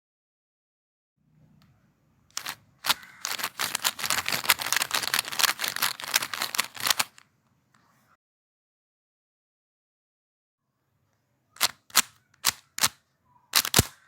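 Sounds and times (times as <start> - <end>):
speed cube clicking turns: 2.3 - 7.2, 11.6 - 14.0.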